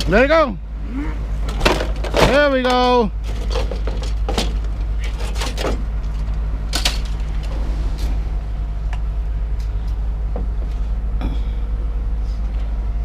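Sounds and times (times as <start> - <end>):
engine rumbling: 0.0 - 13.0
metal knocks and clanks: 1.5 - 8.2.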